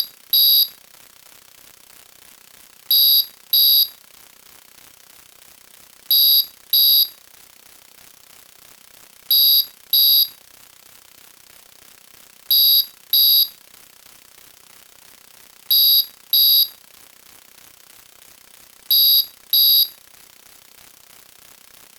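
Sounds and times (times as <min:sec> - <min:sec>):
electronic alarm beeping: 0:00.0 - 0:00.7, 0:02.9 - 0:03.9, 0:06.1 - 0:07.1, 0:09.3 - 0:10.3, 0:12.5 - 0:13.5, 0:15.7 - 0:16.7, 0:18.9 - 0:19.9.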